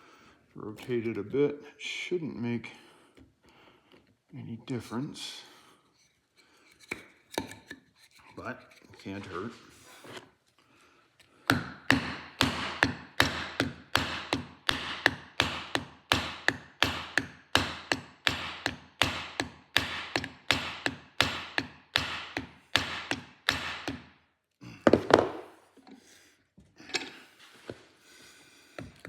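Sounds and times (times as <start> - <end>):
hammer tapping on wood: 11.5 - 24.1.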